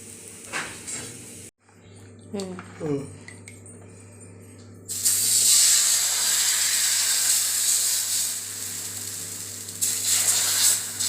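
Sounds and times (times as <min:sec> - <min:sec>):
batter sizzling on griddle: 0:04.9 - 0:11.0.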